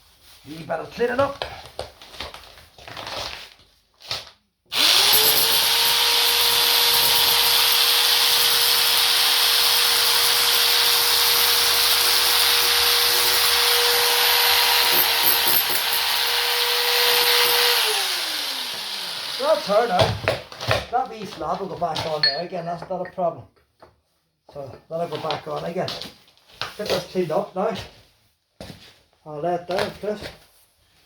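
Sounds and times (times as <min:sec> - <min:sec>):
vacuum cleaner running: 0:04.8 - 0:07.5, 0:10.9 - 0:19.9.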